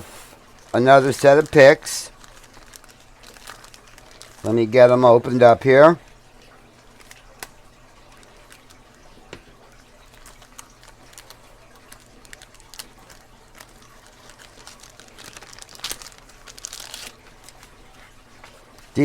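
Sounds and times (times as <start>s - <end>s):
packaging rustling: 0.0s - 5.0s, 6.9s - 19.0s
packaging clicks: 0.6s - 4.5s, 10.0s - 17.8s.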